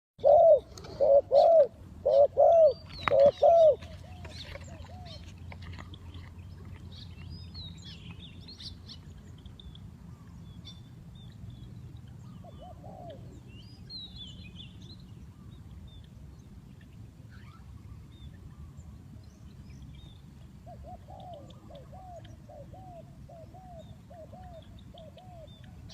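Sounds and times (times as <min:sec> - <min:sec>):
dove cooing: 0:00.2 - 0:05.3, 0:12.4 - 0:13.4, 0:20.6 - 0:25.9
small birds chirping: 0:02.0 - 0:25.9.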